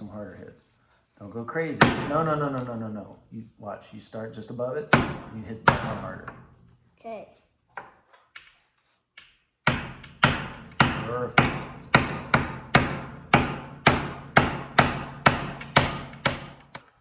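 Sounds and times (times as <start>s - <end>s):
hammer driving nail into wood: 1.8s - 2.3s, 4.9s - 6.4s, 7.8s - 16.9s.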